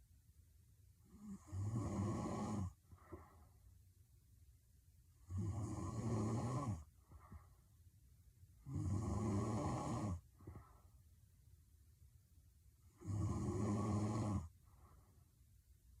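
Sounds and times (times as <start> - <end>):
woman snoring loudly: 1.2 - 2.8, 5.3 - 6.8, 8.7 - 10.2, 13.0 - 14.5
soft breath out: 2.8 - 3.8, 6.9 - 7.8, 10.3 - 11.1, 14.6 - 15.4.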